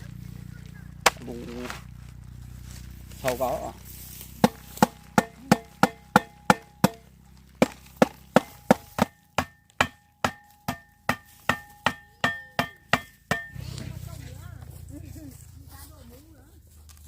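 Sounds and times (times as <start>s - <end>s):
blade chopping wood: 1.0s - 1.8s, 4.4s - 13.6s.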